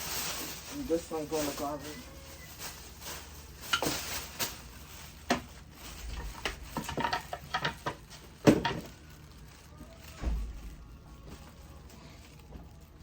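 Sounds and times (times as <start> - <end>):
plastic bottles knocking: 5.3 - 9.0.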